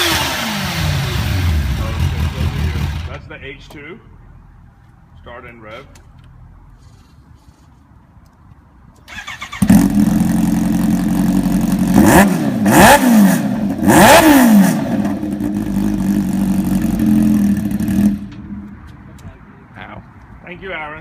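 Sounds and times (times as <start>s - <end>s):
engine revving: 0.0s - 3.2s, 9.1s - 18.5s
motorcycle engine cranking: 9.0s - 10.3s.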